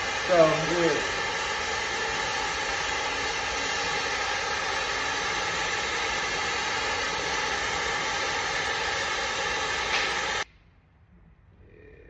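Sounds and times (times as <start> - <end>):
machine motor running: 0.0 - 10.4.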